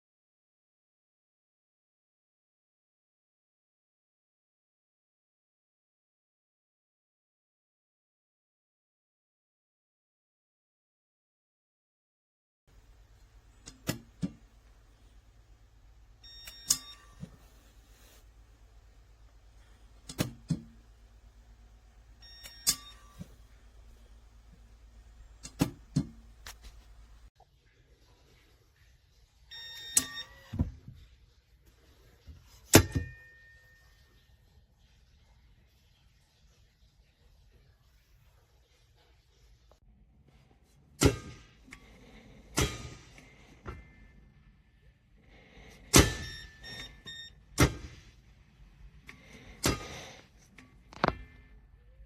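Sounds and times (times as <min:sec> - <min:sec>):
short beeps: 0:16.2 - 0:17.2, 0:22.2 - 0:23.3, 0:46.0 - 0:47.4.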